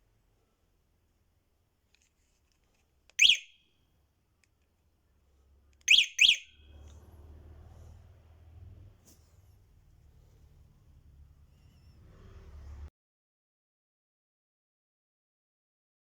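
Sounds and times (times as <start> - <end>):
electronic beeper chirping: 5.9 - 6.5.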